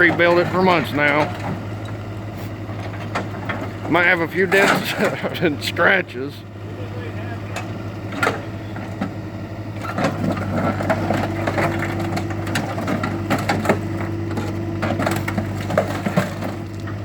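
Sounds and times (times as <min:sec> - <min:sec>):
excavator engine running: 0:00.0 - 0:17.0
car body crunching and cracking: 0:09.8 - 0:17.0.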